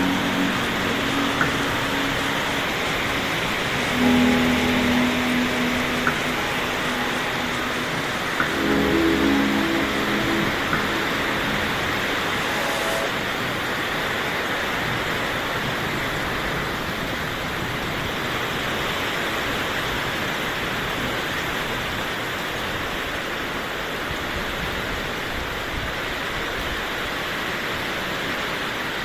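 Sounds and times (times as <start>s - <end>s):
heavy rain pouring: 0.0s - 18.6s.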